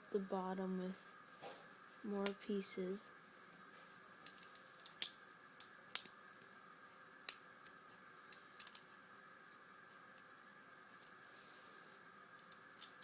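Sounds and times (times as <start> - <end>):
plastic bricks clicking: 4.3 - 6.2, 12.4 - 13.0.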